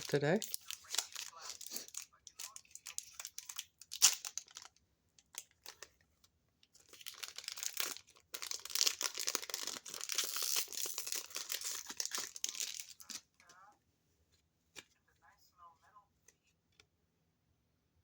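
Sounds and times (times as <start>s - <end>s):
foil wrapper crinkling and tearing: 0.0s - 5.9s, 6.8s - 13.3s.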